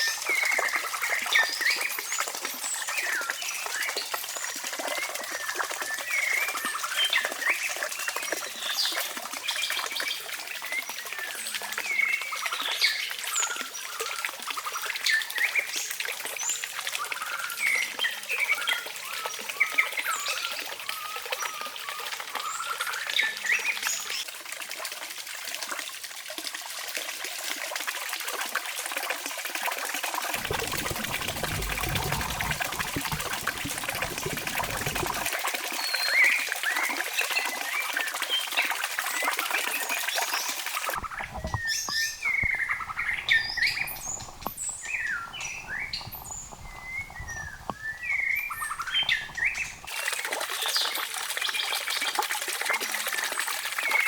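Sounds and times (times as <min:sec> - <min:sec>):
birds chirping: 0:30.4 - 0:35.3, 0:41.0 - 0:49.9.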